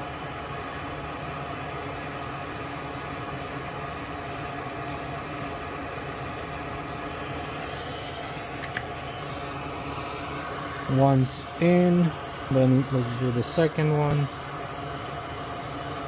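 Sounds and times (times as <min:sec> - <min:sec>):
mechanical hum and hiss: 0:00.0 - 0:16.0
sharp click: 0:08.6 - 0:08.9.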